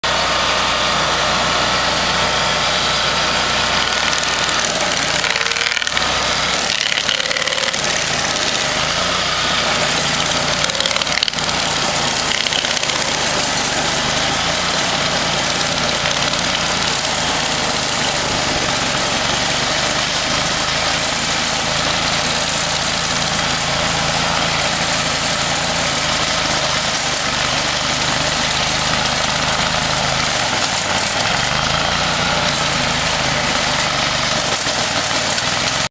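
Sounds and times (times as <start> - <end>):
stump grinder engine running: 0.0 - 35.9.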